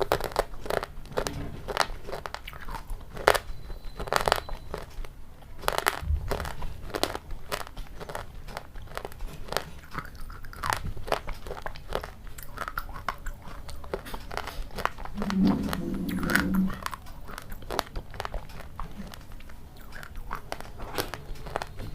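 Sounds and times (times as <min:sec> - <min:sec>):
crunching crisp food: 0:00.0 - 0:21.9
low steady-pitched sound: 0:15.1 - 0:17.2.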